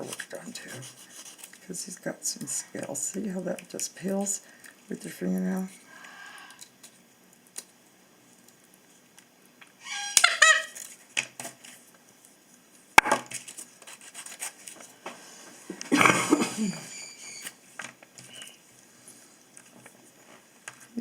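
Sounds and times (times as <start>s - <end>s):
parrot squawking harshly: 9.8s - 10.8s.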